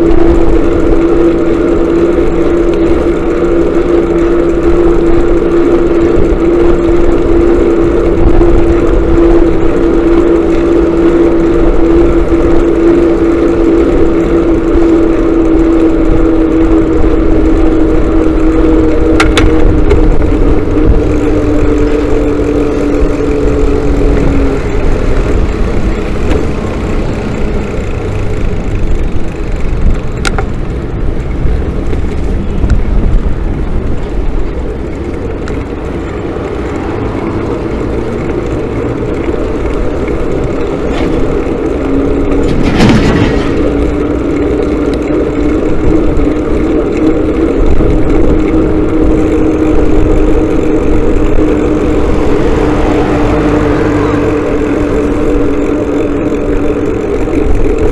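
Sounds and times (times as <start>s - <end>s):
motorcycle engine running: 0.0s - 57.9s
rush of noise: 14.5s - 57.9s.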